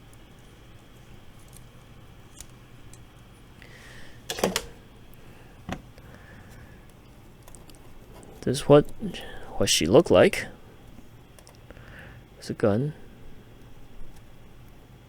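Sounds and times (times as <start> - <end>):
plastic parts clicking and tapping: 4.3 - 4.8.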